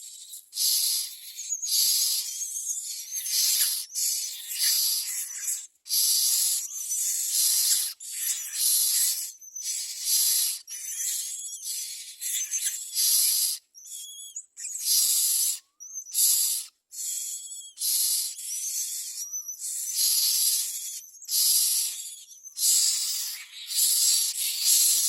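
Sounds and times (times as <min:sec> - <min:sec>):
thin whistled bird notes: 0:00.0 - 0:25.0
nestlings harsh hissing calls: 0:00.3 - 0:13.6, 0:14.7 - 0:25.0.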